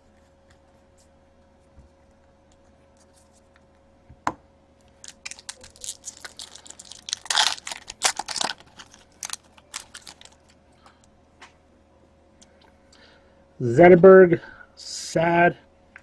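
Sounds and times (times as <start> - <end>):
packaging crinkling: 4.9 - 10.6.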